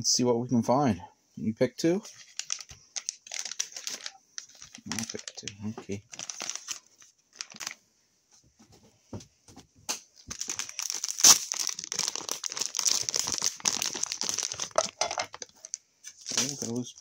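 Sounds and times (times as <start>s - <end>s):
plastic packaging crinkling and tearing: 2.1s - 7.8s, 10.2s - 17.0s
loud plastic rip: 11.0s - 12.0s.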